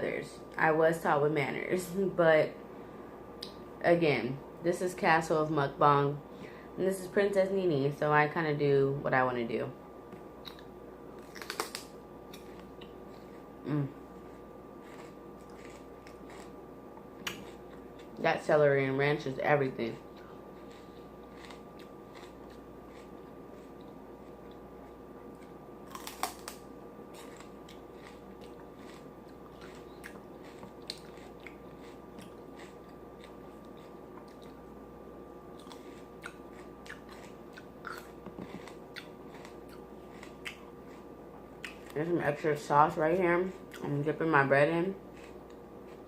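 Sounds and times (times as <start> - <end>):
faint steady hum: 0.0 - 46.0
person chewing crunchy food: 10.4 - 18.2, 20.1 - 34.7, 35.5 - 42.0, 45.0 - 46.0.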